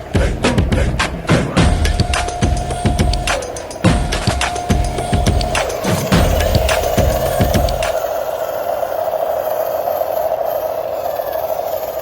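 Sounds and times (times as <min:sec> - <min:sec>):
drum beat: 0:00.0 - 0:08.0
held synth note: 0:00.0 - 0:08.3.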